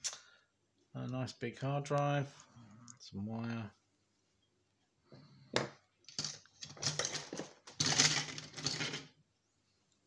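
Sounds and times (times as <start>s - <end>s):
metal and plastic parts clattering: 5.6s - 9.2s.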